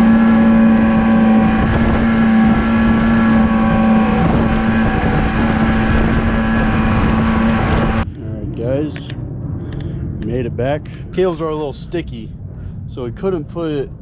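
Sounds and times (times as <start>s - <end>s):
outboard motor running: 0.0s - 8.1s
wind noise on microphone: 0.0s - 14.0s.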